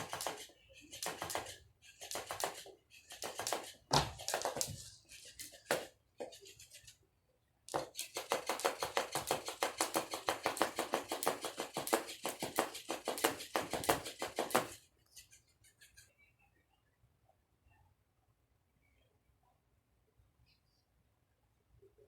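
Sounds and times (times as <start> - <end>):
fish toy slapping against floor: 3.2 - 6.4, 7.7 - 14.8.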